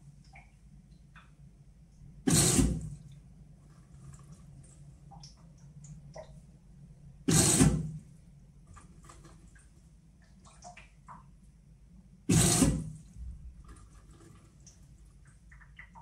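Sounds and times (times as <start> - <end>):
washing machine rushing bursts: 2.2 - 3.0, 7.2 - 8.2, 12.3 - 14.5.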